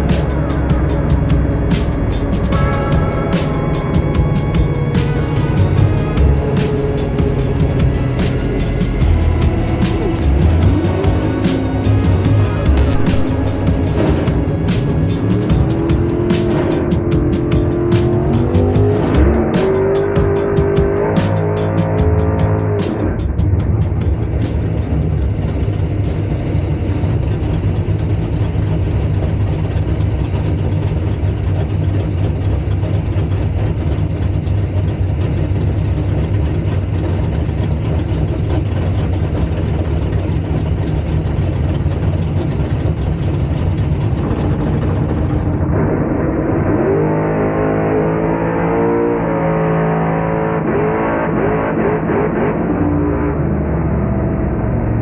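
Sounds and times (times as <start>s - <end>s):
engine revving: 0.0s - 29.6s, 43.7s - 55.0s
race car engine idling: 0.0s - 45.7s.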